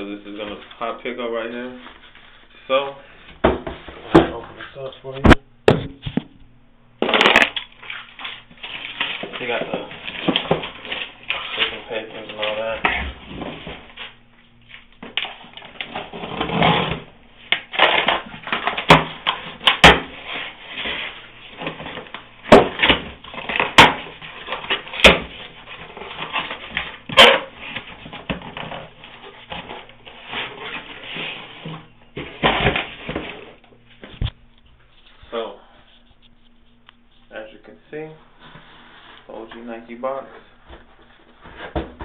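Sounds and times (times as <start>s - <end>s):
packaging cracks and knocks: 7.0s - 14.1s, 14.7s - 20.2s, 21.5s - 30.2s
paper and plastic rustling: 7.0s - 16.6s, 17.6s - 37.6s.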